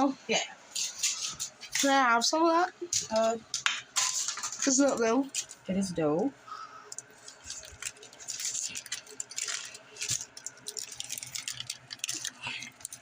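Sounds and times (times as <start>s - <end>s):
packaging rustling and crinkling: 6.9s - 13.0s.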